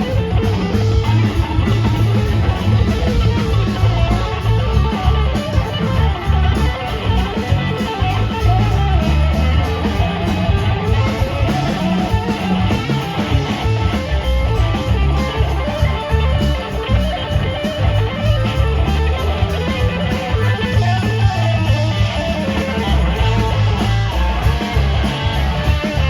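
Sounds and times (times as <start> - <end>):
bass guitar: 0.0 - 26.0
drums: 0.0 - 26.0
electric guitar: 0.0 - 26.0.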